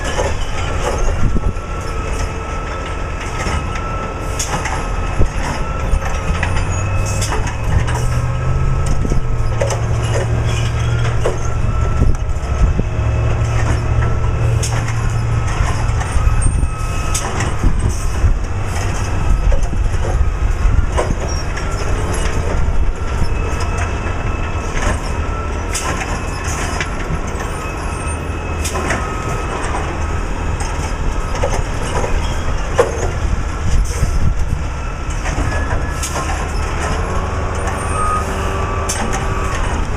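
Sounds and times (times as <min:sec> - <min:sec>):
diesel truck engine revving: 0:00.0 - 0:39.9.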